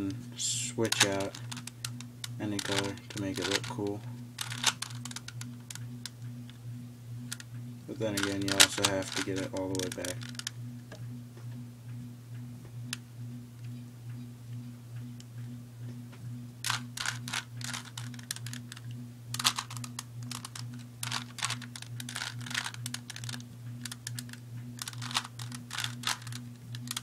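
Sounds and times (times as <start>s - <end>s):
steady low hum: 0.0s - 27.0s
puzzle cube clicking: 16.7s - 27.0s.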